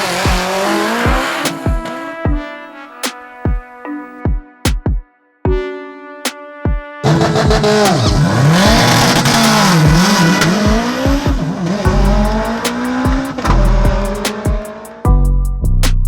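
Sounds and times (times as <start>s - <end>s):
car engine revving hard: 0.0s - 2.0s, 7.0s - 14.9s
thumping music beat: 0.0s - 16.0s.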